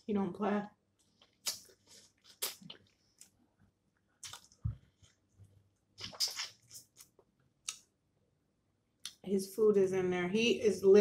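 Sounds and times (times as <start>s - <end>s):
wet squishy chewing: 1.0s - 3.4s, 4.2s - 5.2s, 6.0s - 7.8s.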